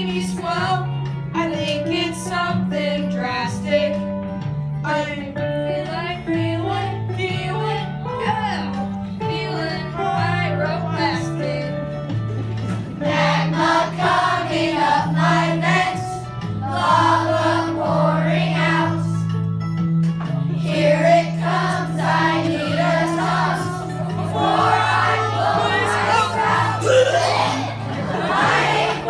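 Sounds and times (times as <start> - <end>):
instrumental accompaniment low notes: 8.1 - 29.0
children singing together: 13.0 - 19.2, 20.6 - 29.0.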